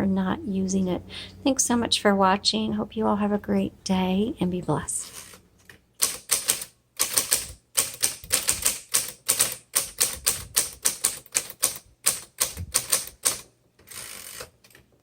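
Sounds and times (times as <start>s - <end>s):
typewriter rasping: 6.0s - 14.7s
manual typewriter typing: 6.0s - 14.9s.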